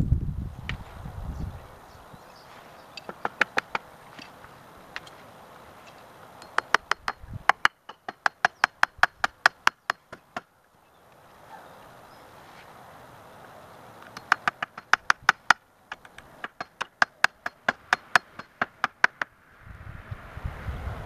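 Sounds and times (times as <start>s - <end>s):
hammer driving nails into wood: 3.0s - 4.3s, 6.4s - 10.5s, 14.1s - 19.3s.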